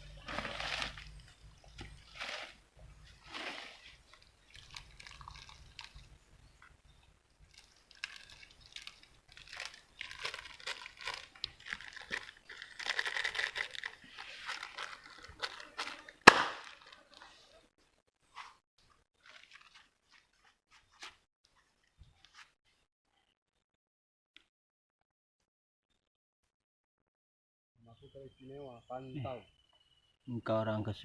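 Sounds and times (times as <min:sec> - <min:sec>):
crinkling rustling handling noise: 0:00.0 - 0:06.8, 0:07.4 - 0:17.6, 0:19.2 - 0:22.4.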